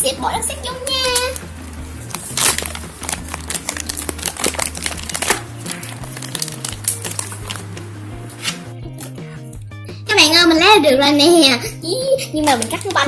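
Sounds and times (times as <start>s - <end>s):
background music with bass line: 0.0s - 13.0s
slime crackling and crinkling: 0.9s - 7.8s, 12.4s - 13.0s.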